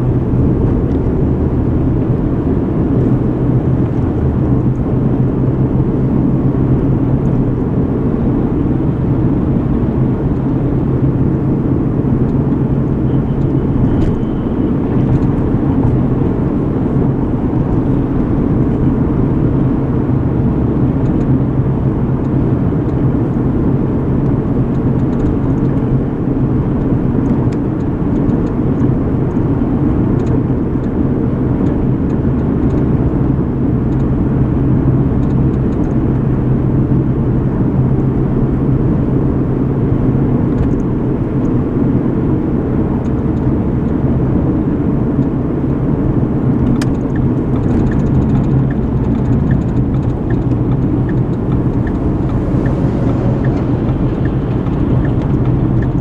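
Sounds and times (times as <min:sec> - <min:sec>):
road and engine noise in car: 0:00.0 - 0:56.0
faint regular ticking: 0:46.6 - 0:56.0.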